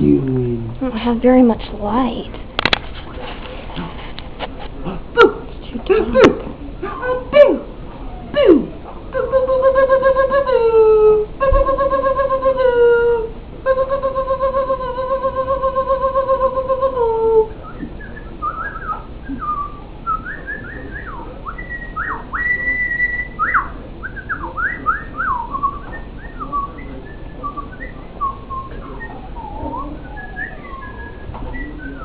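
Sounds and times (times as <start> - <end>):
puppies whining and squeaking: 27.6 - 32.0.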